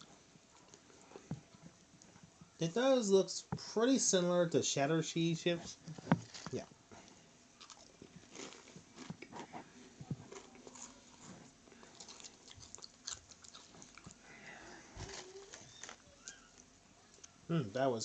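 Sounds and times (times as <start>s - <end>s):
chewing crunchy chips: 6.2s - 17.4s.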